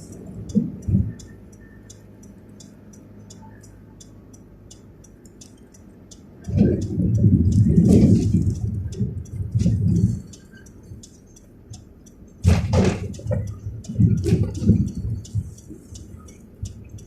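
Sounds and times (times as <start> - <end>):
raindrops ticking: 0.0 - 17.0
wind gusts buffeting microphone: 6.4 - 11.0, 12.4 - 17.0.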